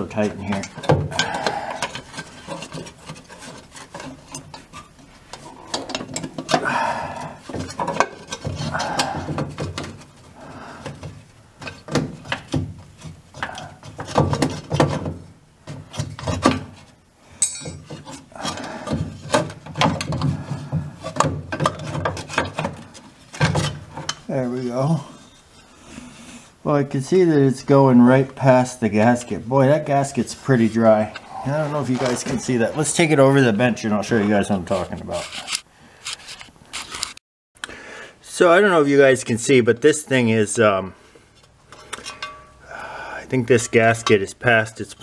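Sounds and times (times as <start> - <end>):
metal scraping and knocking: 0.0 - 6.7, 7.4 - 24.3, 30.0 - 35.6, 41.7 - 42.6.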